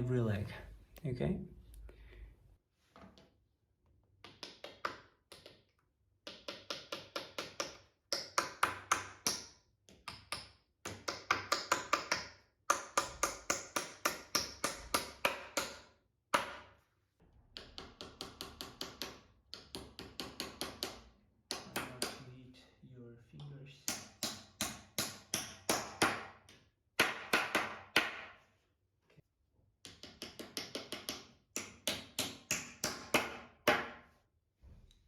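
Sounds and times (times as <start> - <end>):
hammer tapping: 29.8 - 33.9.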